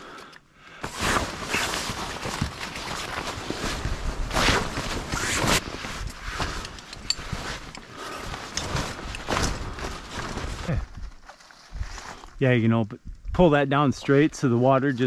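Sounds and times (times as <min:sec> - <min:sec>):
tent fabric rustling: 0:00.8 - 0:12.4.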